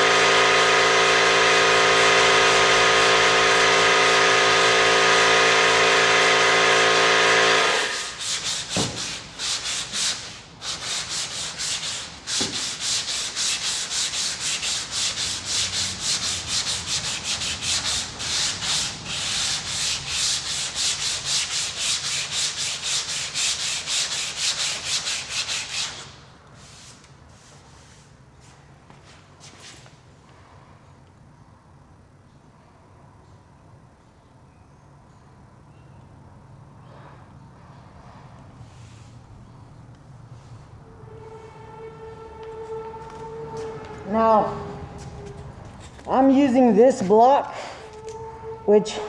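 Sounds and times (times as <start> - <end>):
hand sanding car body panels: 0.0 - 28.0, 41.2 - 49.0.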